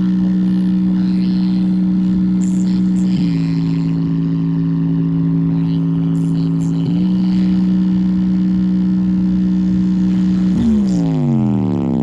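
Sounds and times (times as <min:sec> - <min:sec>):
sustained low synth notes: 0:00.0 - 0:12.0.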